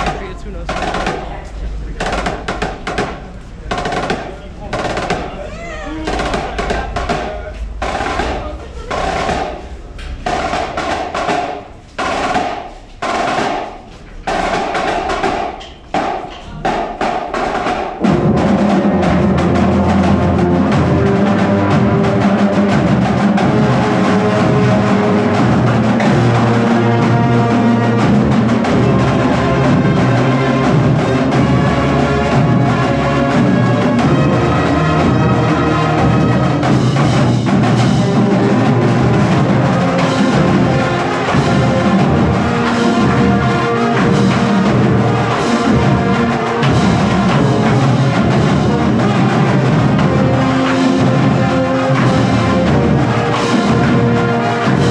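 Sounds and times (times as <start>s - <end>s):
low pitched notes: 0.0s - 12.0s
drumline playing cadence: 0.0s - 54.9s.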